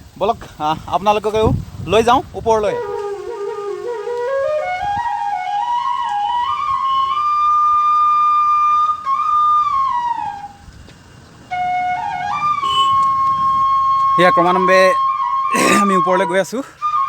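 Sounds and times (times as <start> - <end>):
flute melody: 2.5 - 17.0.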